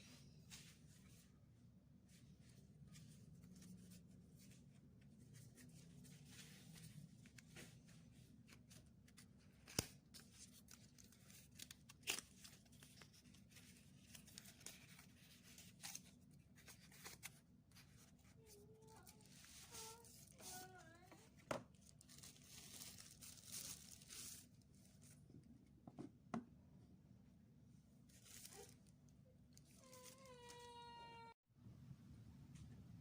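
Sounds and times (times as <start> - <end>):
packaging tearing and crinkling: 22.0 - 24.5.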